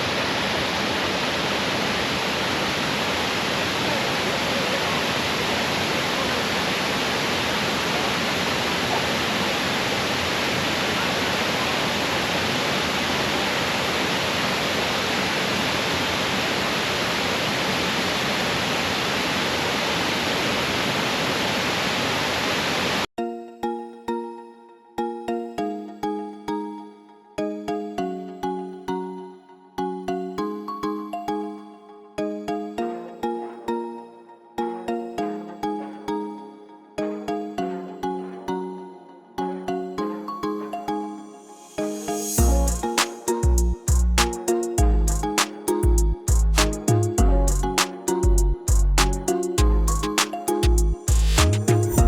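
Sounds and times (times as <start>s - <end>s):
waterfall rushing: 0.0s - 23.1s, 41.6s - 43.4s
music: 23.2s - 52.0s.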